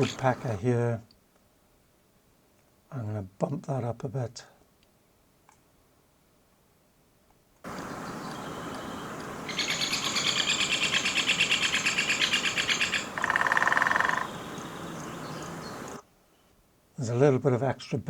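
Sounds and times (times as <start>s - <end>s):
woodpecker calling: 0.0s - 0.4s, 7.7s - 16.0s
outdoor hiss: 0.0s - 3.6s, 4.6s - 17.6s.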